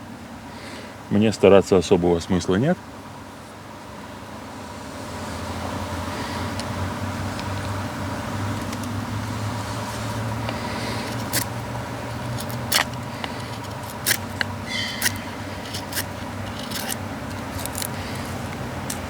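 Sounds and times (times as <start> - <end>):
low steady hum: 0.0 - 19.0
knife scraping fire steel: 9.6 - 19.0.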